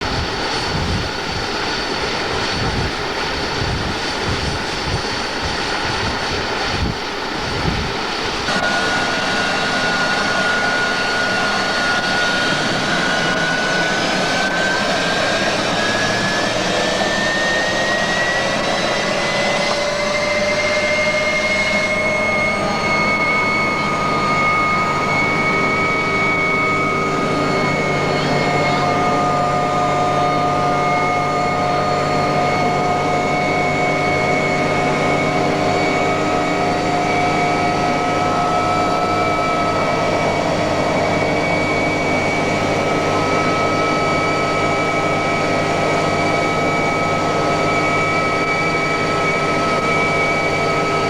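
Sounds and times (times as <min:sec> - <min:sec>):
helicopter engines and rotor: 0:00.0 - 0:51.0
turbine whine rising in pitch: 0:00.0 - 0:51.0.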